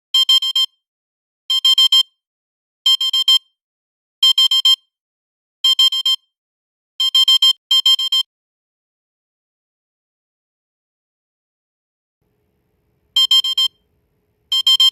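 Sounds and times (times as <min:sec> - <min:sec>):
digital alarm clock beeping: 0:00.2 - 0:00.8, 0:01.5 - 0:02.2, 0:02.9 - 0:03.6, 0:04.2 - 0:04.9, 0:05.6 - 0:06.3, 0:07.0 - 0:08.3, 0:13.2 - 0:13.8, 0:14.5 - 0:14.9.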